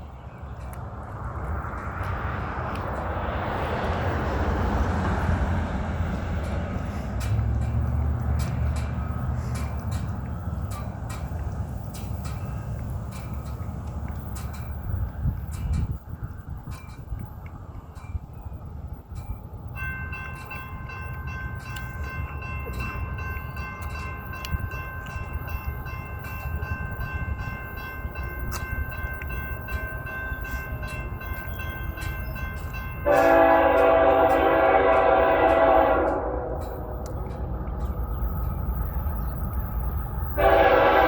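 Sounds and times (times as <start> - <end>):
train rumbling: 0.0 - 41.0
high ringing with ticks: 16.7 - 40.1
train horn blast: 33.0 - 37.0, 40.4 - 41.0.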